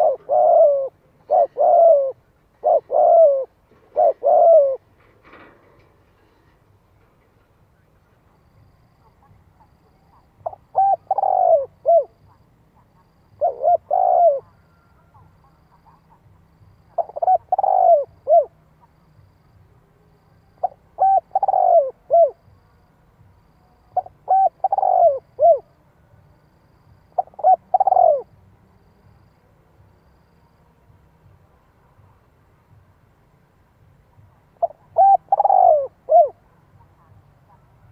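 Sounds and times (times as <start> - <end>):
dove cooing: 0.0 - 4.9, 9.0 - 18.9, 20.4 - 22.5, 23.9 - 25.7, 27.2 - 28.4, 34.4 - 37.9.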